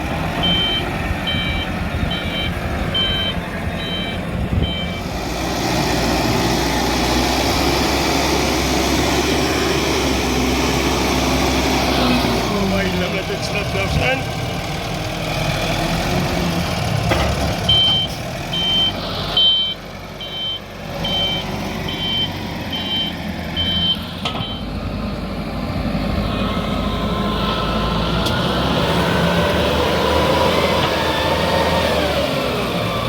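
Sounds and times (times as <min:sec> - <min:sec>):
loader engine running: 0:00.0 - 0:33.0
reverse alarm beeping: 0:00.4 - 0:05.1, 0:17.7 - 0:24.7.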